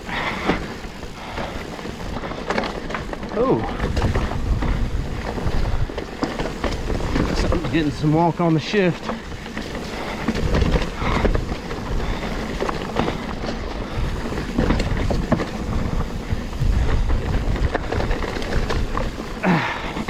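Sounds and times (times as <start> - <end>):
bike rattling over bumps: 0.0 - 20.0
bike tyres rumbling over dirt: 0.0 - 20.0
wind on microphone: 3.5 - 8.0, 9.9 - 19.9.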